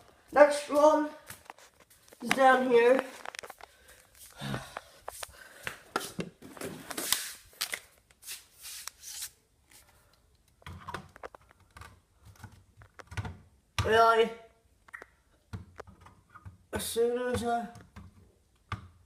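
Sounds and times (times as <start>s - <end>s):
soft footsteps: 0.0s - 9.9s
rustling and handling clicks: 1.3s - 4.1s, 9.7s - 13.3s.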